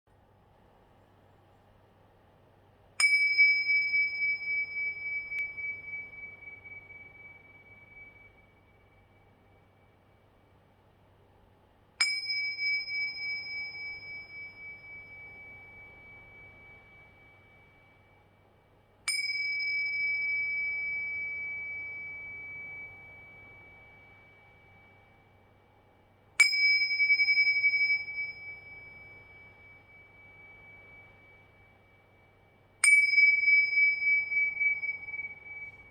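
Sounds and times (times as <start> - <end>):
small cymbals ringing: 2.9 - 10.7, 12.0 - 35.9.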